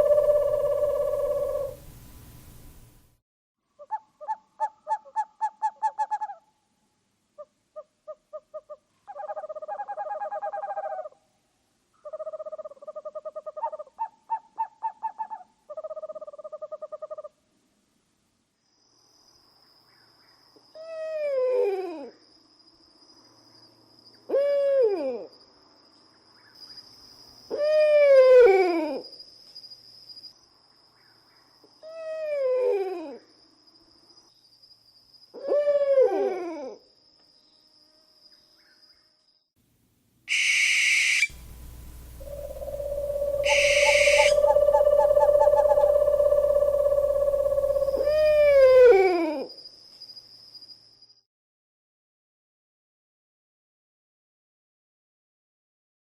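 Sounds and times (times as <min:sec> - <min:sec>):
owl hooting: 0:00.0 - 0:02.7, 0:07.4 - 0:11.2, 0:24.3 - 0:25.2, 0:35.4 - 0:36.7, 0:40.3 - 0:49.5
high-pitched background tone: 0:41.4 - 0:48.2.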